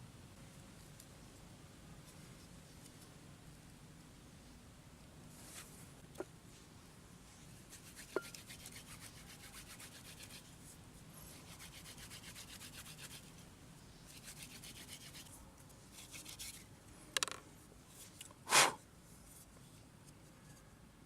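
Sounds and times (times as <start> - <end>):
fast rhythmic scraping strokes: 7.7 - 10.4.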